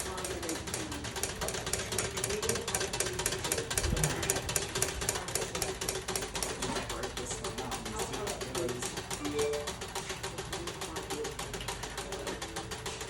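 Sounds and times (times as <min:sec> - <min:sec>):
machine clicking rapidly: 0:00.0 - 0:13.0.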